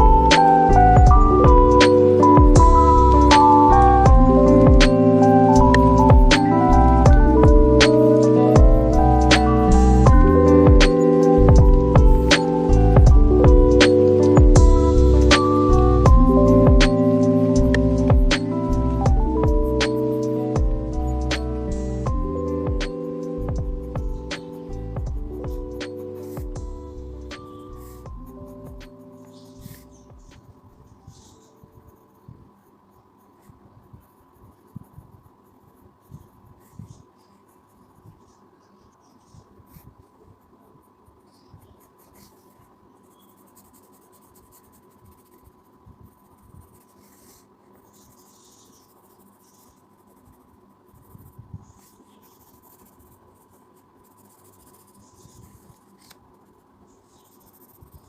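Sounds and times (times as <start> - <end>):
faint steady whine: 0.0 - 58.0
pencil scratching on paper: 27.2 - 58.0.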